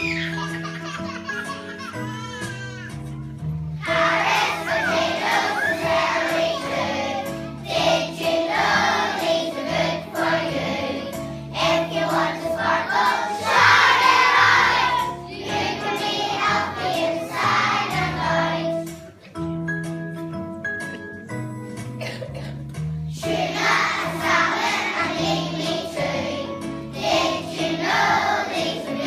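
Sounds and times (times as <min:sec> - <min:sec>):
instrumental accompaniment: 0:00.4 - 0:29.0
children singing: 0:03.8 - 0:18.8, 0:23.2 - 0:29.0.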